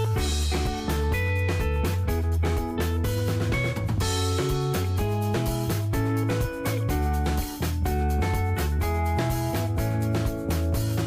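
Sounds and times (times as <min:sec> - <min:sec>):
bass: 0:00.0 - 0:11.0
guitar: 0:00.0 - 0:11.0
steady drum beat: 0:00.0 - 0:11.0.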